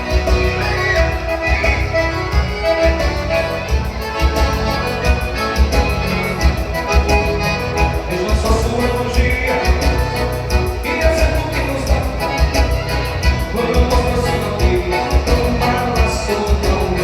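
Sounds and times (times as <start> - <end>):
music with steady beat: 0.0 - 17.0.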